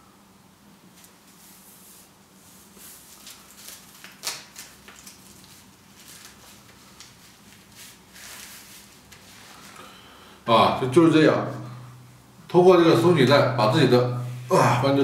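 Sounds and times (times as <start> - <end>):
elastic strap rustling: 0.9 - 9.9.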